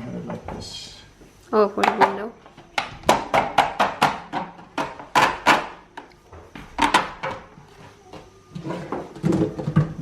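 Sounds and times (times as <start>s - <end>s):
hard plastic parts knocking: 2.8s - 5.8s.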